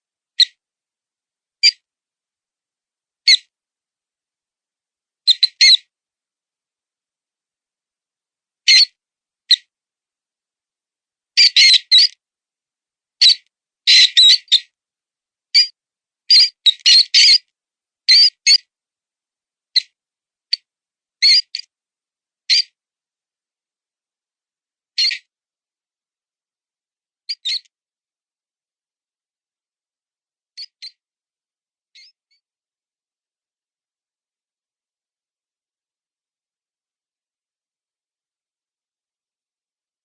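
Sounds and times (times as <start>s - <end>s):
mouse squeaking: 11.4s - 12.2s, 13.2s - 14.7s, 16.3s - 17.5s, 18.1s - 18.6s, 20.5s - 21.7s, 22.5s - 22.7s, 25.0s - 25.3s, 27.3s - 27.7s, 30.6s - 31.0s, 32.0s - 32.2s.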